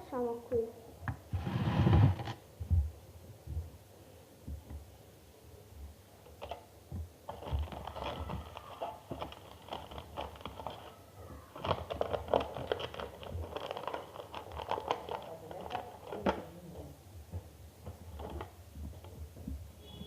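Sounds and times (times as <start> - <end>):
crackling and crinkling clicks: 7.2 - 16.5.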